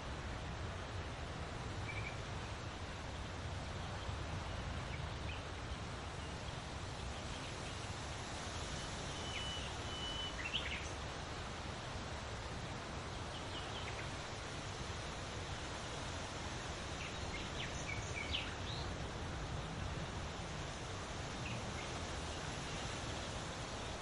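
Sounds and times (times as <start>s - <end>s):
wind rustling large leaves: 0.0s - 24.0s
bird chirps: 9.2s - 10.9s
whistled bird notes: 9.2s - 10.9s.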